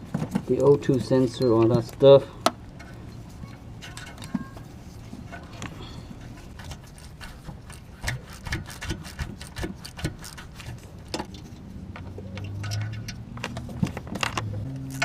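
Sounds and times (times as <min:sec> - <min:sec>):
hand tools clicking on metal: 0:06.3 - 0:15.0.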